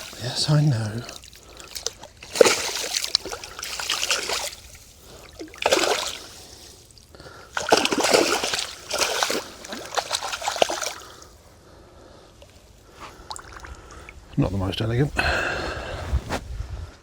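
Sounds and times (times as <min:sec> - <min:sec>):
fish splashing in water: 0:00.0 - 0:11.4.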